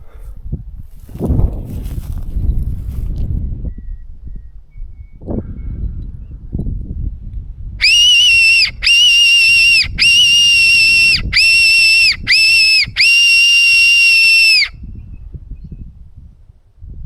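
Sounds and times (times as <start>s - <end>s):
low rustling: 0.9s - 3.3s
high-pitched fox whistle squeals: 7.8s - 14.8s.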